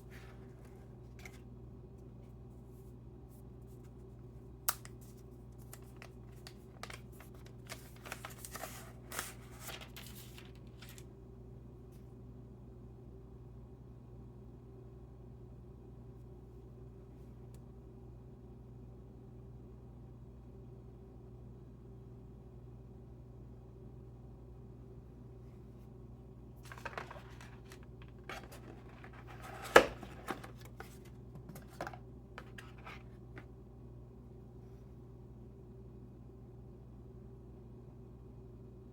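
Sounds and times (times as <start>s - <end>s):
packaging rustling: 5.6s - 11.0s, 26.6s - 33.1s.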